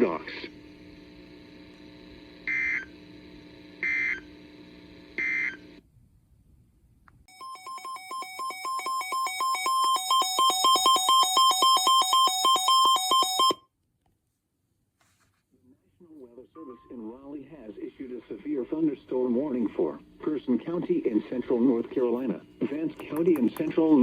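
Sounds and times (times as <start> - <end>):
two-pitch electronic alarm beeps: 7.3 - 13.6.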